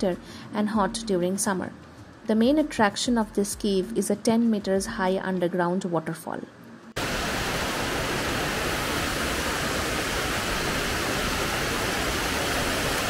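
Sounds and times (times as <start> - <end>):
rushing water: 7.0 - 13.0.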